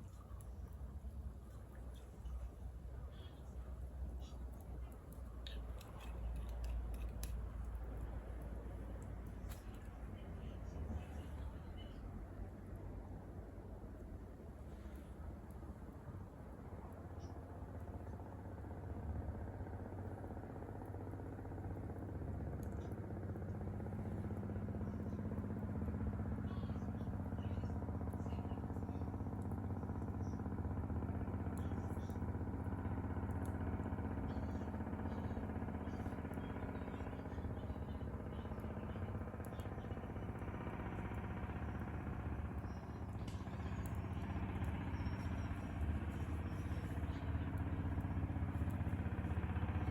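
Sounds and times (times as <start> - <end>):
engine humming steadily: 0.0 - 49.9.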